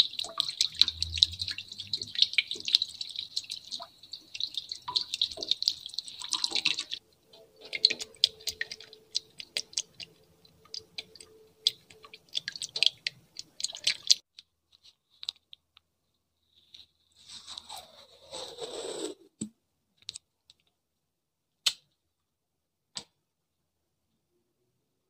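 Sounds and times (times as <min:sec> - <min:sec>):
foley crackling and clicking: 0:00.0 - 0:15.9.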